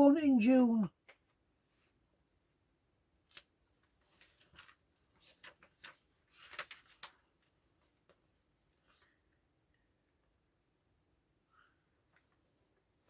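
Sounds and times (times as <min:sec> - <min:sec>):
faint paper rustles: 0:03.2 - 0:09.4, 0:11.6 - 0:13.0.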